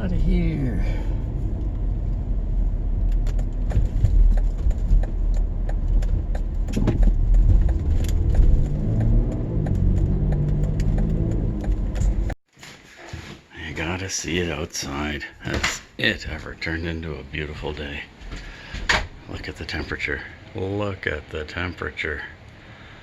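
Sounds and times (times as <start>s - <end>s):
car engine and road rumble: 0.0s - 12.4s.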